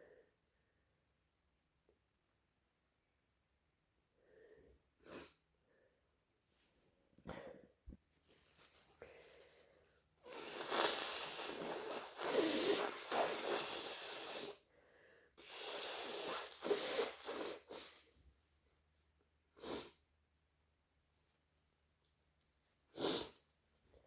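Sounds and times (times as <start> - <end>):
person blowing nose: 10.2 - 14.7, 15.4 - 18.0, 19.6 - 19.9, 23.0 - 23.4.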